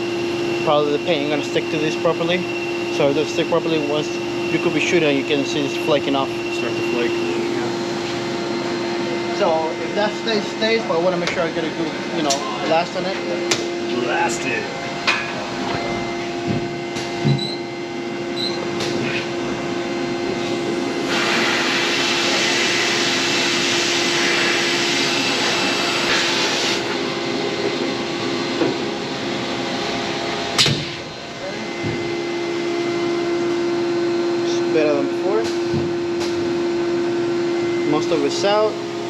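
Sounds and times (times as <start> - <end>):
machine hum: 0.0 - 39.0
sandblasting nozzle hissing: 21.1 - 26.8.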